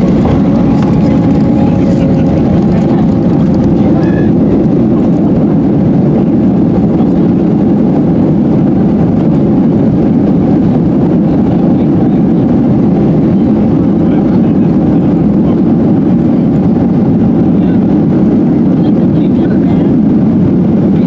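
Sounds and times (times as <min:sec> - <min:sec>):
airplane engines rumbling in cabin: 0:00.0 - 0:21.0.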